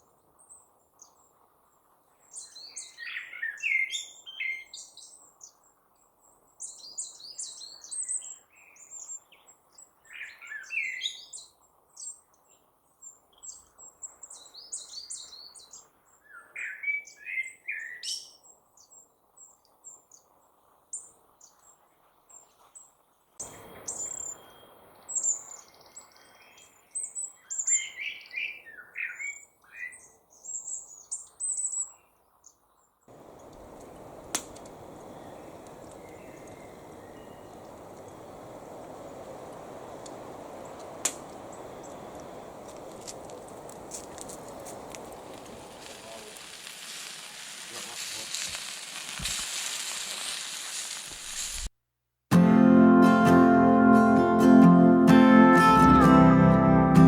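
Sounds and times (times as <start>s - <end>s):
birds chirping: 23.4s - 31.2s, 33.1s - 46.6s
outdoor background rush: 33.1s - 49.4s.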